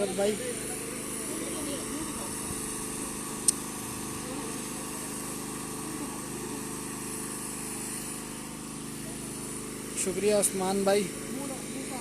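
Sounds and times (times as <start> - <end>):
small engine droning: 0.0 - 12.0
sharp click: 3.4 - 3.6.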